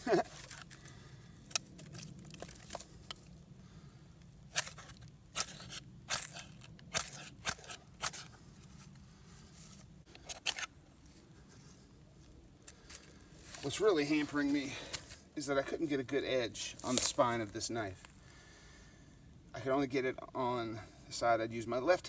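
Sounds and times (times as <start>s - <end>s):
knife scraping fire steel: 4.5s - 8.4s.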